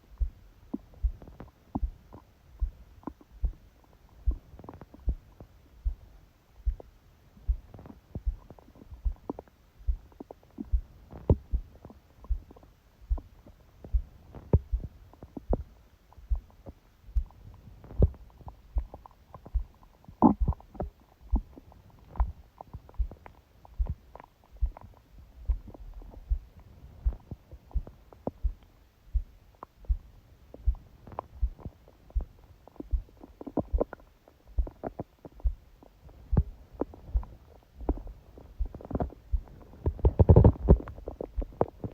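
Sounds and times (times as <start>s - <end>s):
stomach gurgles: 0.0s - 41.9s
fast heartbeat thumps: 0.1s - 41.9s.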